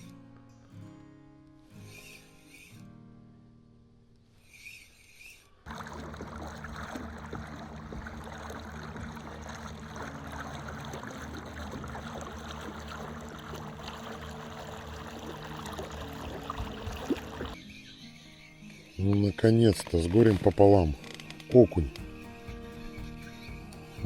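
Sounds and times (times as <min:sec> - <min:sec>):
boat motor humming: 0:05.7 - 0:17.6
water rushing and splashing: 0:05.7 - 0:17.6.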